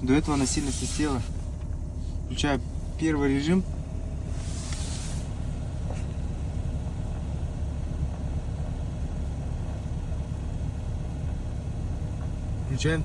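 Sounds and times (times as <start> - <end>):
blower motor rushing air: 4.1 - 5.9.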